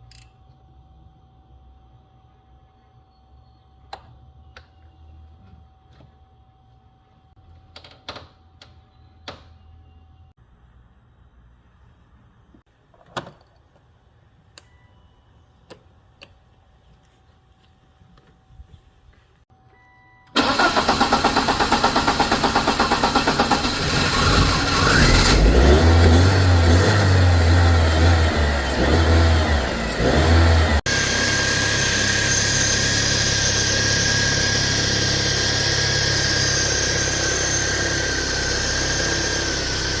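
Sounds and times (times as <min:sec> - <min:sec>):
car starter cranking: 0:20.3 - 0:25.5
car engine revving and idling: 0:21.3 - 0:40.0.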